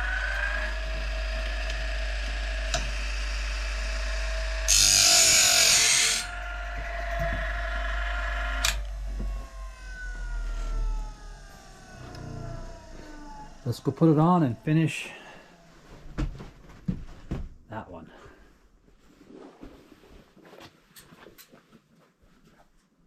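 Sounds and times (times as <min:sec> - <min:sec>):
electric grinder running: 0:00.0 - 0:15.7
grinding wheel hiss: 0:00.0 - 0:15.9
motor spinning down whine: 0:00.0 - 0:16.3.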